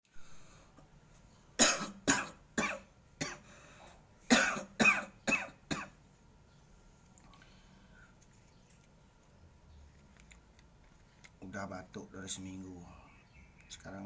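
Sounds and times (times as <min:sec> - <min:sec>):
person coughing: 0:01.6 - 0:03.4, 0:04.3 - 0:06.0.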